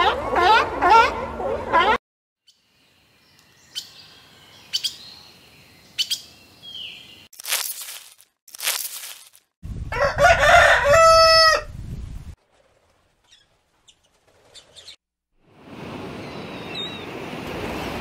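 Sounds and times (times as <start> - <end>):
faint bird chirps: 2.4 - 7.3
steady outdoor hiss: 2.5 - 7.2
rooster crowing: 9.9 - 11.7.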